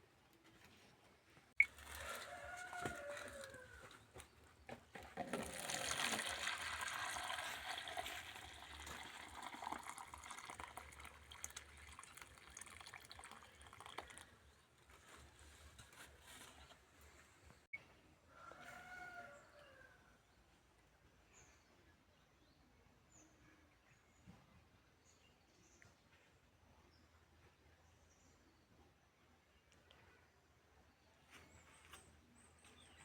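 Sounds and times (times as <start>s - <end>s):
rooster crowing: 1.8s - 3.9s, 18.3s - 19.9s
water pouring with splashing hiss: 5.3s - 14.2s.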